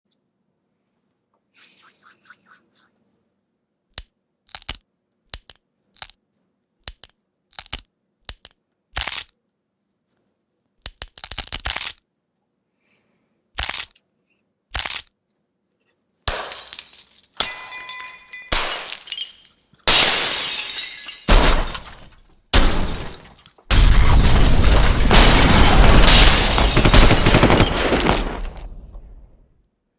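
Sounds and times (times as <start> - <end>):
glass breaking and shattering: 16.3 - 29.3.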